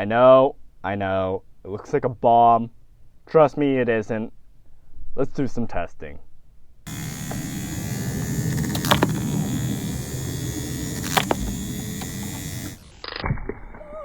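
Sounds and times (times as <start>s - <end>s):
flywheel motors whirring: 6.9s - 13.1s.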